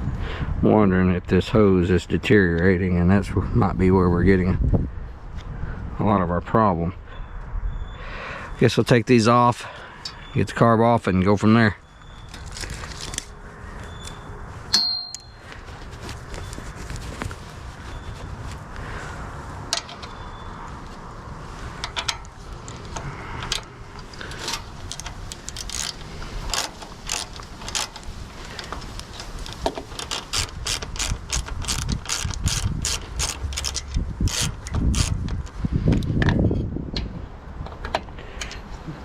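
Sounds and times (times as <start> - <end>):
ratchet wrench clicking: 24.4 - 35.5.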